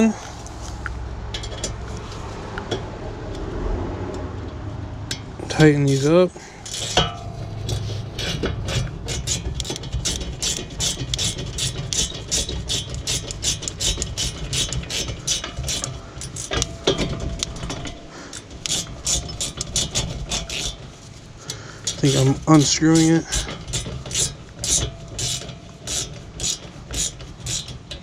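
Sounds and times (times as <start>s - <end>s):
hand ratchet clicking: 8.2s - 20.8s, 21.4s - 28.0s.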